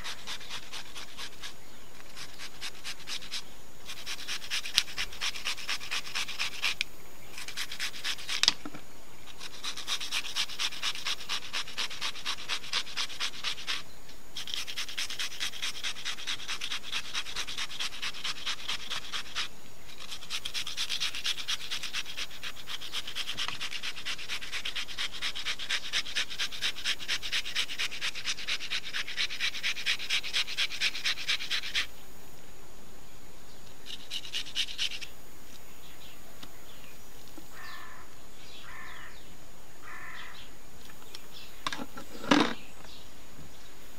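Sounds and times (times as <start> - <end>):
cucumber rasping on a grater: 0.0 - 1.5, 2.2 - 6.8, 9.4 - 13.8, 14.4 - 31.9.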